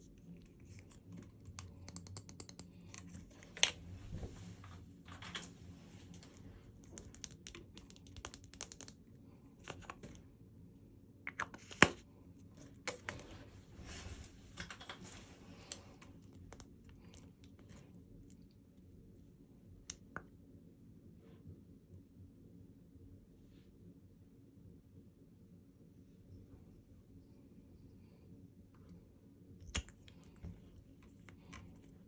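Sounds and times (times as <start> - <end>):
packaging taps and clicks: 1.3 - 3.7.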